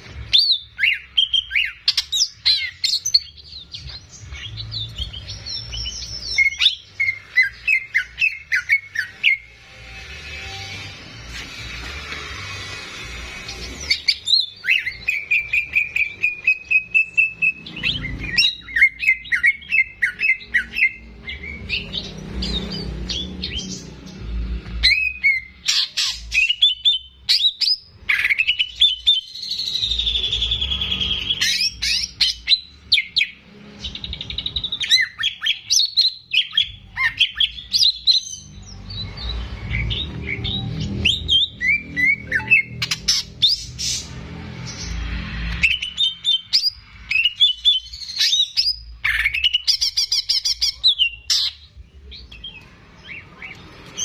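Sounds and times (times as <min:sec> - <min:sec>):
bird singing chirps and trills: 0:00.0 - 0:11.3, 0:13.2 - 0:54.0.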